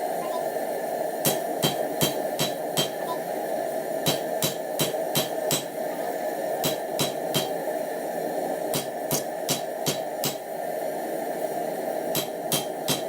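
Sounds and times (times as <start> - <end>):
hammer striking steel on anvil: 1.2 - 3.2, 4.1 - 5.7, 6.6 - 7.6, 8.7 - 10.4, 12.1 - 13.0.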